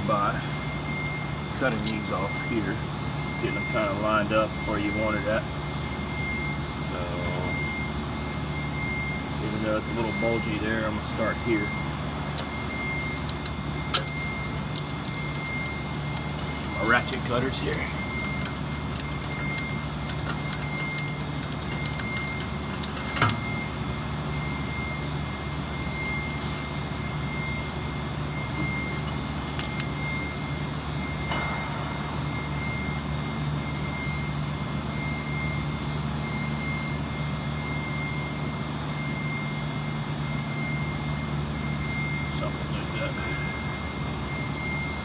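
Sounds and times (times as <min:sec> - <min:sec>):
steady mechanical hum: 0:00.0 - 0:45.0
ratchet cable cutters clicking: 0:13.2 - 0:23.4, 0:29.5 - 0:30.0
cable snapping: 0:13.2 - 0:23.5.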